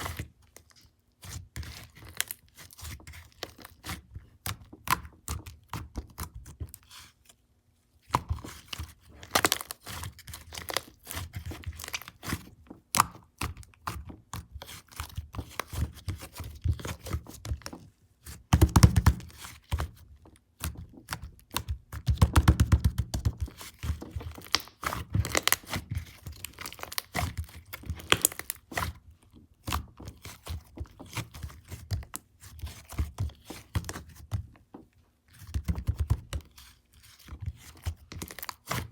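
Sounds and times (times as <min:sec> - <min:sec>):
slime squished crackling and popping: 0:24.2 - 0:28.8.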